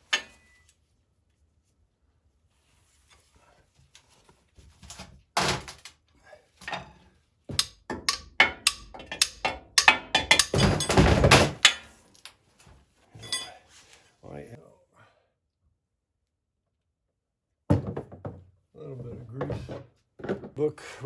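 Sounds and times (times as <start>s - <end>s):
metal pry bar knocking: 7.5s - 11.8s.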